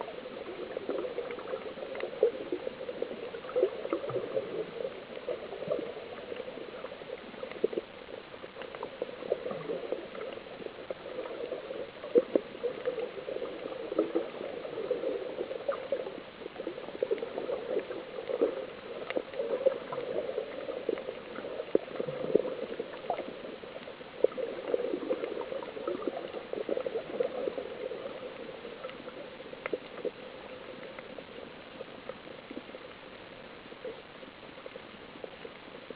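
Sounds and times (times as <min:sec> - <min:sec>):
water bubbling and gurgling: 0:00.0 - 0:35.9.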